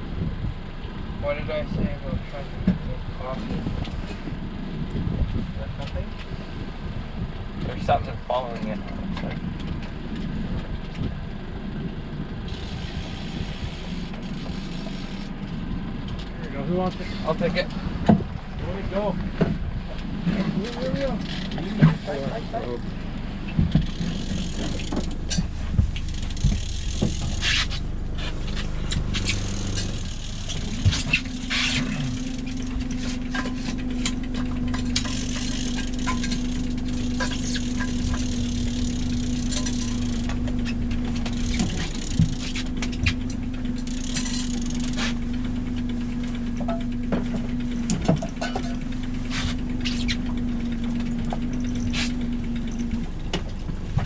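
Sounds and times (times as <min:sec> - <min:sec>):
boat engine running: 0:00.0 - 0:54.0
motor hum: 0:00.0 - 0:54.0
gear rattling on deck: 0:16.1 - 0:54.0.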